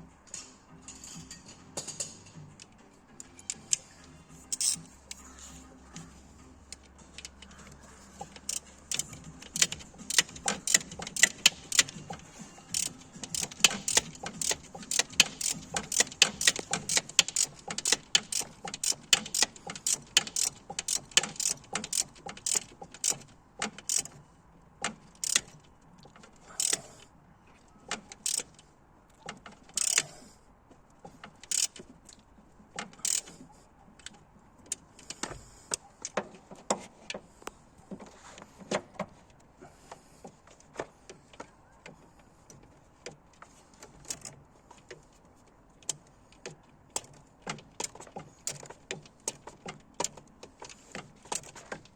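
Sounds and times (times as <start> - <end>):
metallic clicks of hand tools: 0.3 - 5.2, 6.7 - 24.2, 24.8 - 26.9, 27.9 - 30.1, 31.3 - 32.2, 32.8 - 33.4.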